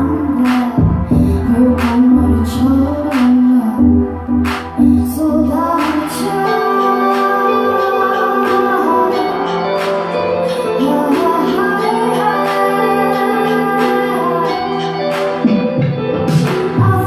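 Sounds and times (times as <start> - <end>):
woman singing wordlessly: 0.0 - 4.1, 4.9 - 9.8, 10.6 - 15.1, 16.6 - 17.0.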